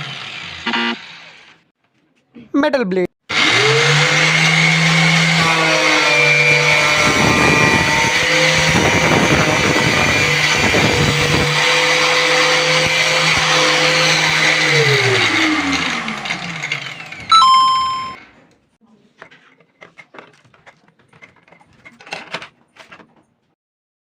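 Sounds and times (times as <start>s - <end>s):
angle grinder whining: 0.0s - 1.6s, 3.3s - 18.2s
grinding disc cutting: 0.0s - 1.6s, 3.3s - 17.3s.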